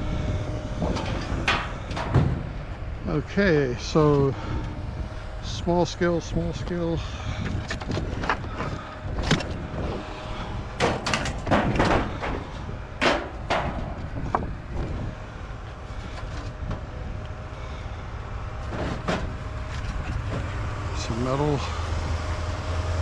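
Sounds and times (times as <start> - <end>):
scrap metal clanking: 0.8 - 2.8, 10.8 - 14.5, 18.6 - 20.6.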